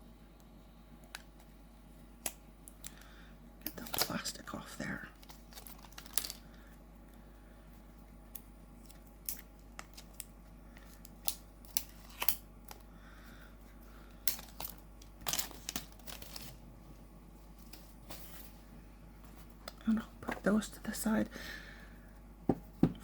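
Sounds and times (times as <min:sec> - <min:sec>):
plastic wrap crinkling: 0:05.2 - 0:06.4, 0:14.4 - 0:16.6.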